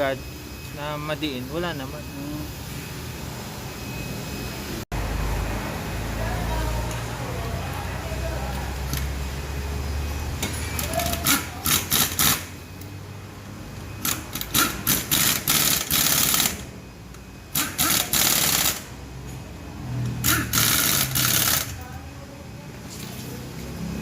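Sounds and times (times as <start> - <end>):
pneumatic air tool bursts: 10.8 - 12.5, 14.0 - 16.6, 17.5 - 18.9, 20.2 - 21.8.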